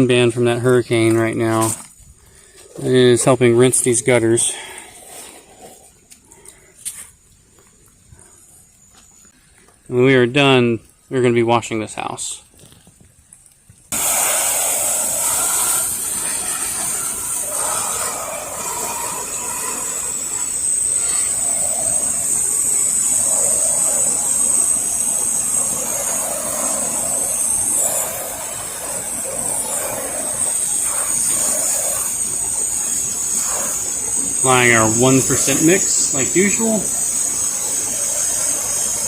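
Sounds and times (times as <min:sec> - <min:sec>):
spray nozzle hissing: 0:14.0 - 0:39.0.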